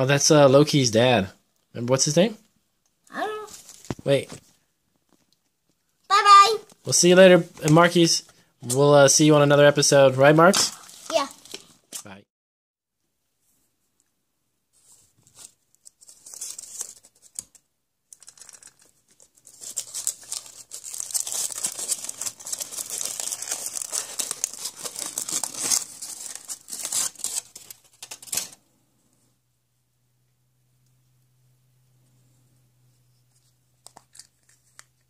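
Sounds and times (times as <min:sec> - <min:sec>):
wrapper crinkling and tearing: 0:10.5 - 0:12.0, 0:15.4 - 0:28.6.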